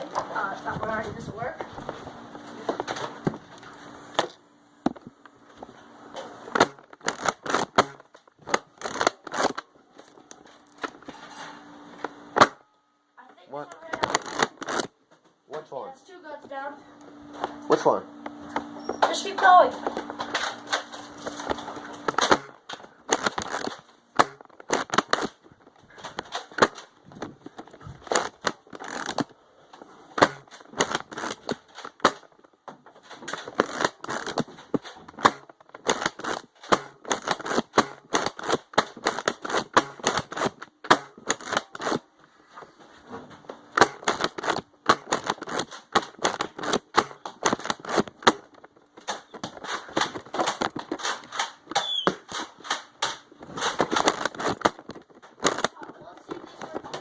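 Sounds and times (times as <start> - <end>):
toy blasters clicking and firing: 6.5 - 9.6, 13.7 - 14.9, 19.1 - 25.4, 26.0 - 27.0, 27.6 - 29.3, 30.2 - 32.4, 33.1 - 42.0, 43.8 - 57.0.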